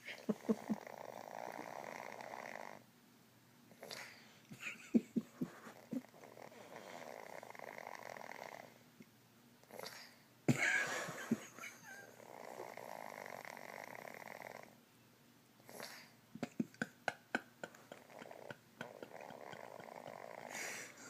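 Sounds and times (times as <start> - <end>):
small dog snoring: 0.3 - 2.8, 3.7 - 4.2, 5.5 - 8.8, 9.7 - 10.2, 11.9 - 14.8, 15.7 - 16.2, 17.9 - 20.9.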